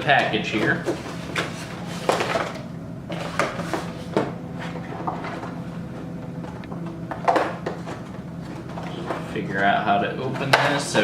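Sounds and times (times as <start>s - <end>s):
packaging knocks and scrapes: 0.0s - 5.6s.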